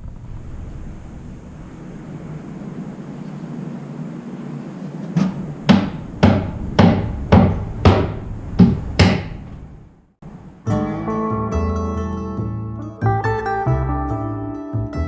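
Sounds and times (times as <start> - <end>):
hammer blows on wood: 5.1 - 9.6
plucked string music: 10.5 - 15.0.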